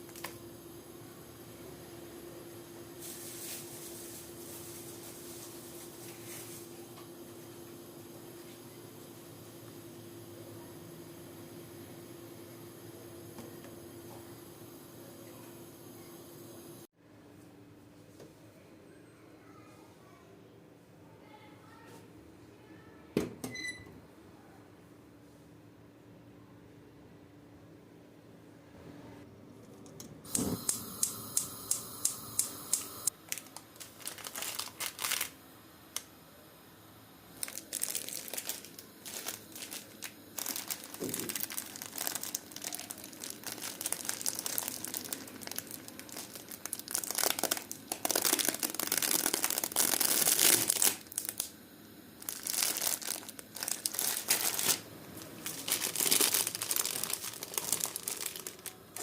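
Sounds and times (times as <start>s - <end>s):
crinkling and rustling: 33.2s - 35.4s, 37.4s - 51.5s, 52.2s - 59.0s.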